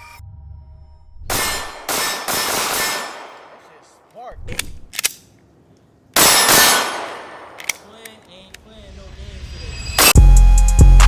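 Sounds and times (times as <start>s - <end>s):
pistol shots echoing: 1.3s - 5.3s, 6.2s - 8.2s
sharp clicks: 4.1s - 5.4s, 7.0s - 8.6s.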